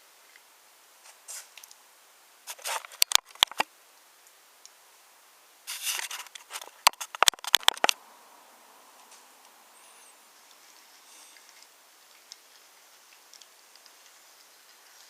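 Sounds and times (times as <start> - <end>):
wooden toy pieces clattering: 5.9 - 8.0.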